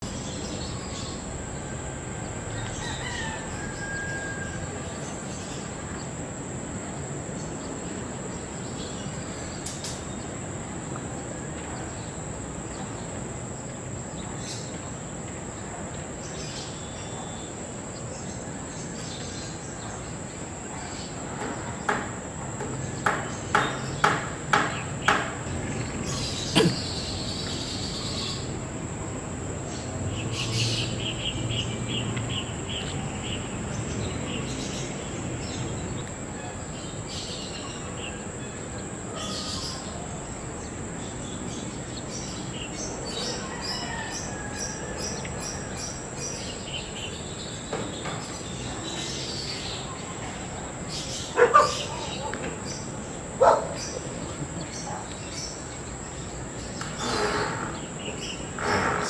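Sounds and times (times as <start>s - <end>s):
high insect drone: 0.0s - 59.0s
sharp harsh calls: 26.3s - 27.1s, 56.9s - 59.0s.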